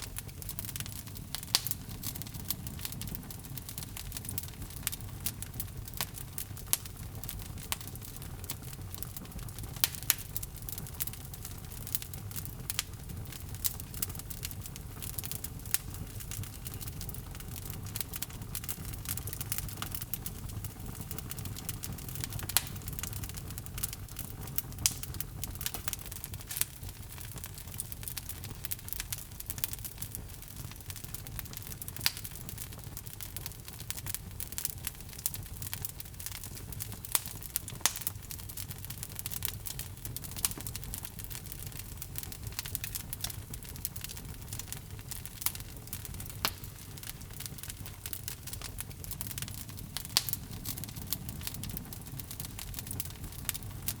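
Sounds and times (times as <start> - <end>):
fire rumbling: 0.0 - 54.0
wood crackling and popping: 0.0 - 54.0.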